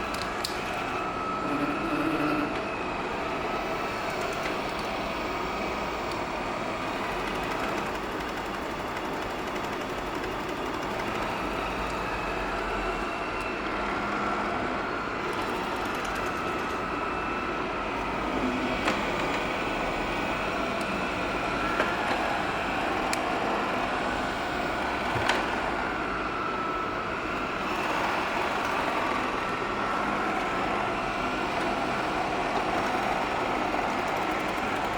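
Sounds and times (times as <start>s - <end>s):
robot vacuum motor whirring: 0.0s - 17.3s, 17.9s - 26.2s.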